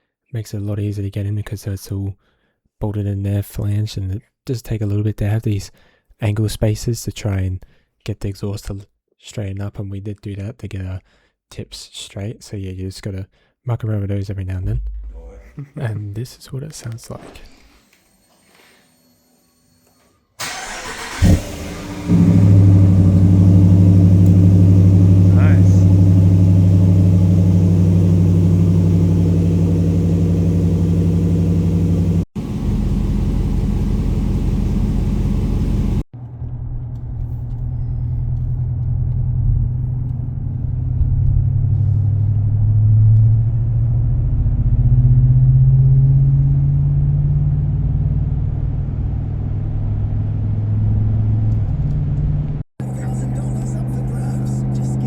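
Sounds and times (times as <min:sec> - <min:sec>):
deep engine idle: 0:20.4 - 0:36.0
low-pitched engine revving: 0:20.4 - 0:36.1, 0:38.8 - 0:55.0.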